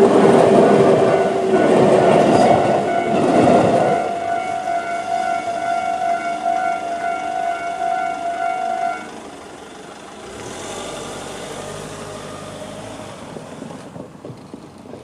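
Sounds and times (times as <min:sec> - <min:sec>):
level crossing alarm bell: 0:00.0 - 0:09.6.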